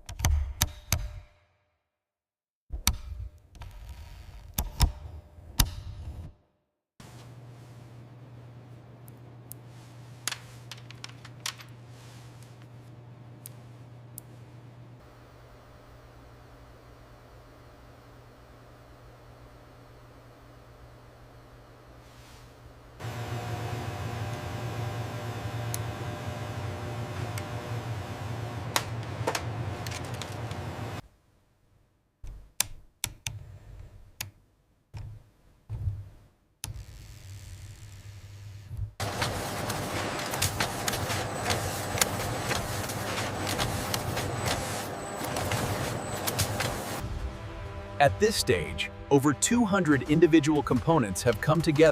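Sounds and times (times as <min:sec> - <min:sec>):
steady low hum: 0:07.0 - 0:31.0, 0:38.7 - 0:51.9.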